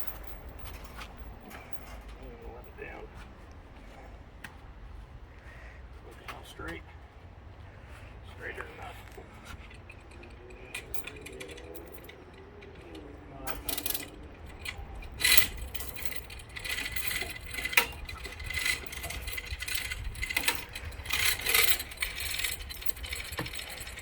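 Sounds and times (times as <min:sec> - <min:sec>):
metallic clinking and jangling: 0:00.0 - 0:03.2, 0:08.5 - 0:24.0
low steady rumble: 0:06.9 - 0:24.0.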